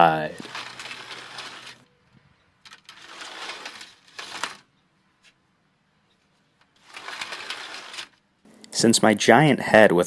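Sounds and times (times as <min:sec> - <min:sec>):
screen door rolling on track: 0:00.0 - 0:01.9, 0:02.6 - 0:04.8, 0:06.5 - 0:08.2.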